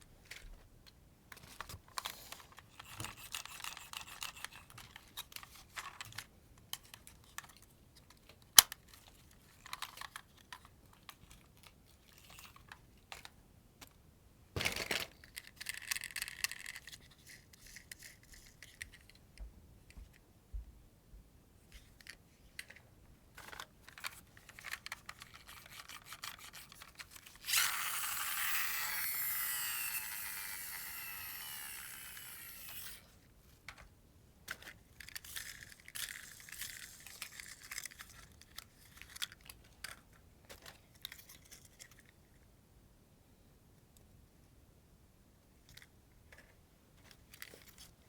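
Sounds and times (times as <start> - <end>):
toy packaging crinkling: 14.6 - 19.1, 23.4 - 33.1, 34.5 - 42.1.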